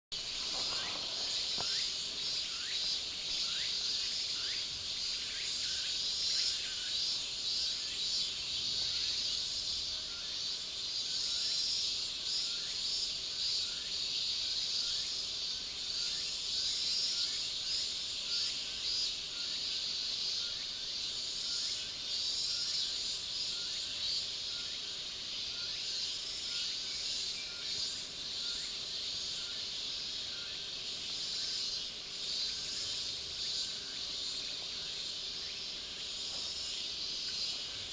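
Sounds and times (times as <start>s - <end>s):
short insect chirps: 0.1s - 37.9s
insects shrilling: 0.2s - 13.9s.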